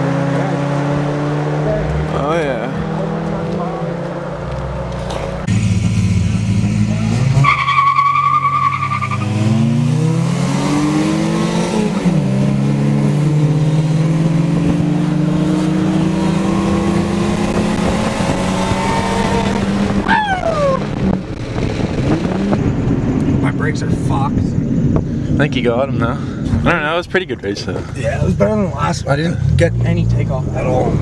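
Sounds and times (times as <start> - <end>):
car engine revving: 0.0 - 31.0
tires squealing: 1.6 - 9.7.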